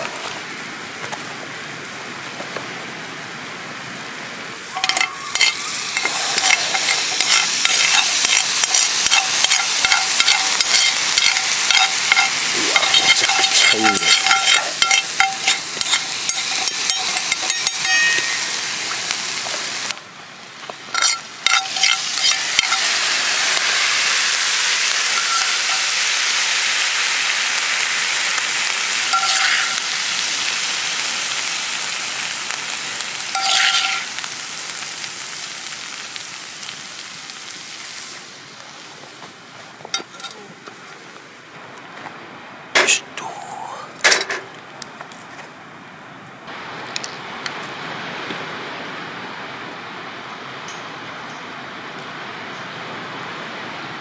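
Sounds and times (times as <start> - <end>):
steak sizzling over campfire: 0.0 - 44.0, 44.6 - 54.0.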